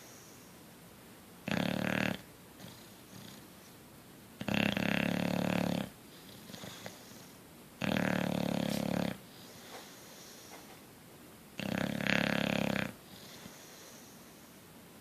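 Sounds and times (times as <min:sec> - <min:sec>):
dog snoring: 0:01.4 - 0:03.5, 0:04.4 - 0:10.4, 0:11.6 - 0:14.2
dog breathing quietly: 0:05.5 - 0:07.4, 0:08.0 - 0:10.8, 0:12.6 - 0:14.6.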